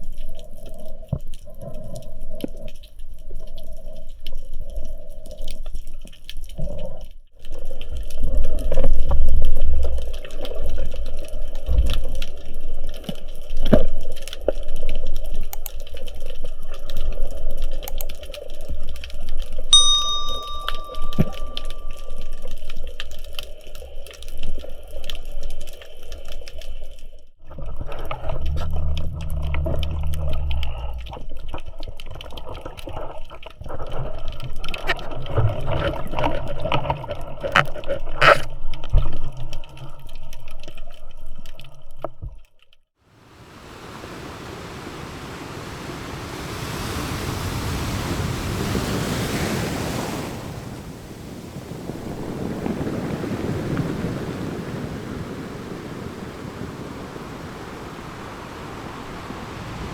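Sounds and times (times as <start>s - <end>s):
crackling clicks underwater: 0.0s - 19.7s, 20.6s - 42.9s
wind: 0.0s - 40.1s, 43.0s - 59.9s
surf hissing: 43.2s - 59.9s.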